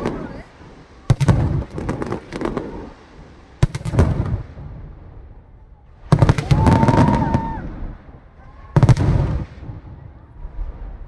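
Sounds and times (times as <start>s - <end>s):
crackling firework pops: 0.0s - 5.1s, 6.0s - 8.1s
firework bangs: 0.0s - 11.0s.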